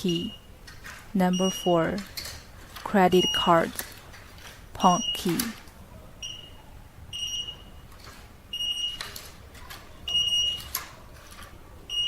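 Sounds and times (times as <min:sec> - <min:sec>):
keypad buzzer beeping: 0:00.0 - 0:00.5, 0:01.2 - 0:02.0, 0:03.1 - 0:03.7, 0:04.8 - 0:05.6, 0:06.2 - 0:07.8, 0:08.5 - 0:09.2, 0:10.1 - 0:10.8.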